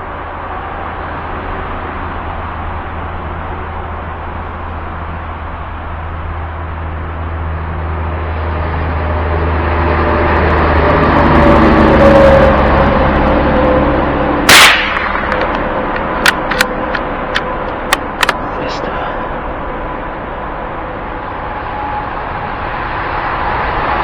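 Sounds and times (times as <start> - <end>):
motor vehicle passing by: 0.0 - 24.0
rifle shot: 14.5 - 16.8.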